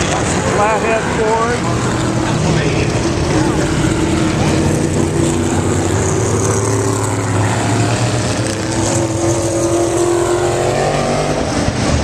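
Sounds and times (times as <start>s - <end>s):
race car engines at speed: 0.0s - 12.0s.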